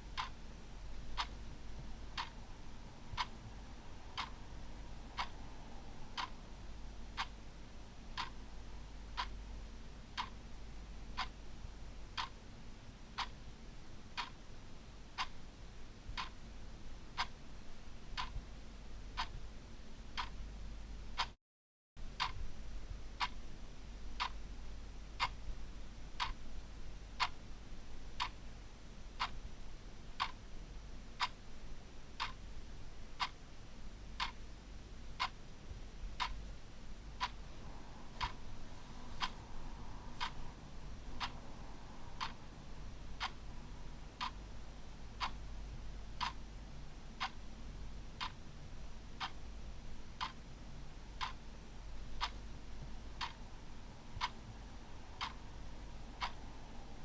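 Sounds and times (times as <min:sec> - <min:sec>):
faint low hum: 0:00.0 - 0:21.3, 0:22.0 - 0:57.0
clock ticking: 0:00.1 - 0:00.4, 0:01.0 - 0:03.4, 0:04.1 - 0:06.4, 0:07.1 - 0:07.4, 0:08.2 - 0:08.4, 0:09.1 - 0:09.4, 0:10.2 - 0:10.4, 0:11.2 - 0:11.4, 0:12.2 - 0:12.4, 0:14.2 - 0:14.4, 0:16.1 - 0:16.4, 0:18.2 - 0:18.4, 0:19.2 - 0:19.4, 0:20.2 - 0:20.4, 0:22.2 - 0:22.4, 0:23.2 - 0:23.4, 0:24.2 - 0:24.4, 0:25.2 - 0:25.4, 0:27.2 - 0:27.4, 0:28.2 - 0:28.4, 0:29.2 - 0:29.4, 0:30.2 - 0:30.4, 0:32.2 - 0:32.4, 0:33.2 - 0:33.4, 0:34.2 - 0:34.4, 0:35.2 - 0:35.4, 0:36.1 - 0:36.6, 0:37.2 - 0:57.0.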